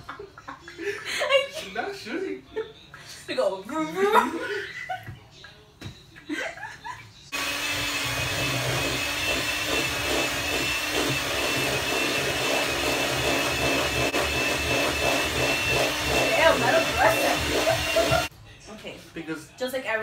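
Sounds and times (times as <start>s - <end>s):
electric mixer whining: 7.3s - 18.3s.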